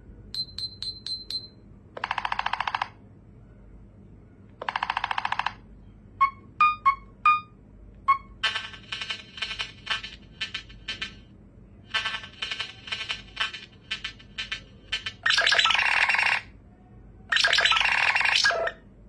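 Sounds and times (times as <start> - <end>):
short chirps at shifting pitch: 6.2 - 7.5.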